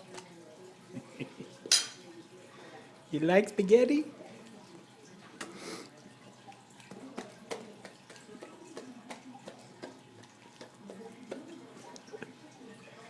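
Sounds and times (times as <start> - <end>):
dog chewing wet smacks: 4.3 - 12.7.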